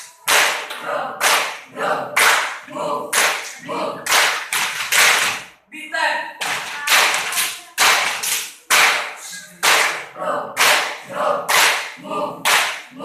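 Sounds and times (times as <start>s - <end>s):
voices: 0.0s - 4.2s
group clapping in unison: 0.0s - 5.6s, 6.4s - 13.0s.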